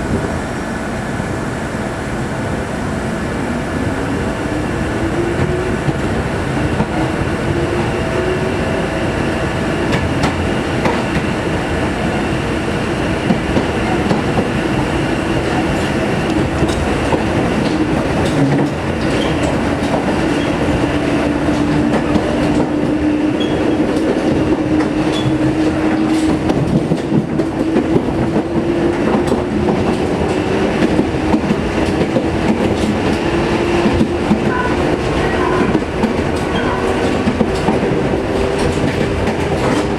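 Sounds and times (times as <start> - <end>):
train wheels clacking on rails: 4.7 - 39.9.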